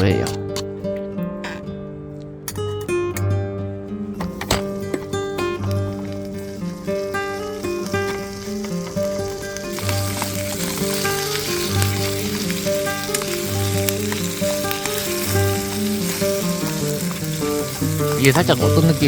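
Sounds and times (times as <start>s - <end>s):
background music: 0.0s - 19.0s
meat sizzling in a pan: 4.7s - 19.0s.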